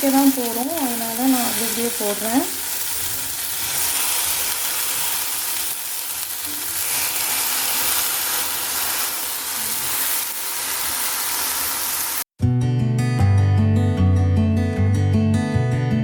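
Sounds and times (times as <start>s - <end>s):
vegetables sizzling in a frying pan: 0.0s - 12.3s.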